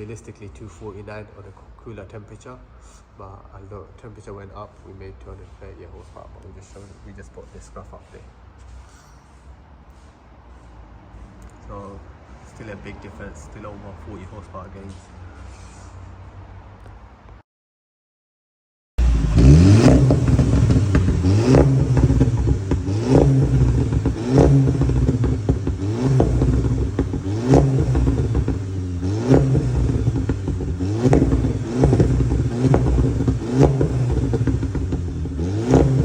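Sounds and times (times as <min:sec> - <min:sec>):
car engine revving: 0:19.0 - 0:36.0
exhaust pops and crackles: 0:19.0 - 0:36.0.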